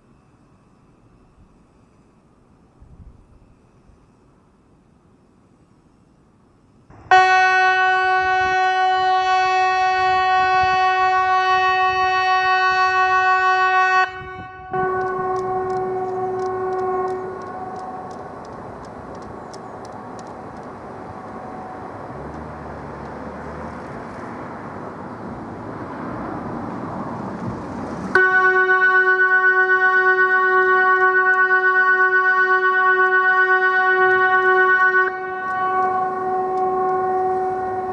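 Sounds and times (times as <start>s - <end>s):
electronic siren steady tone: 6.9s - 26.0s, 28.1s - 37.9s.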